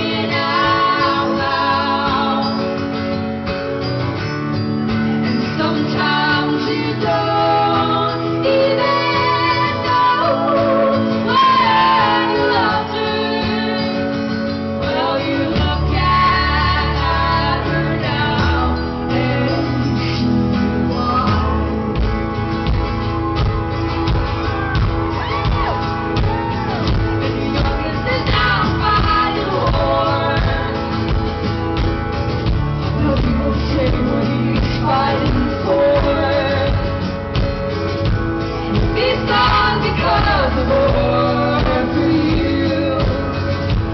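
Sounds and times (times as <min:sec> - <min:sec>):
women singing: 0:00.0 - 0:03.2, 0:05.3 - 0:22.1, 0:25.1 - 0:31.8, 0:32.8 - 0:37.6, 0:38.7 - 0:43.9
live folk-rock band: 0:00.0 - 0:43.9
heavy bass: 0:14.4 - 0:43.9.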